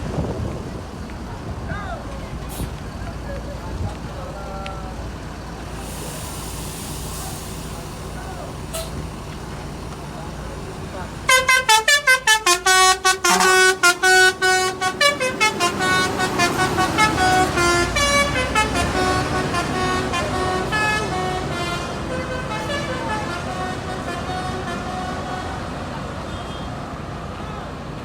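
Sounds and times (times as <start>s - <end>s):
multi-tone bus air horn tune: 5.7s - 26.8s.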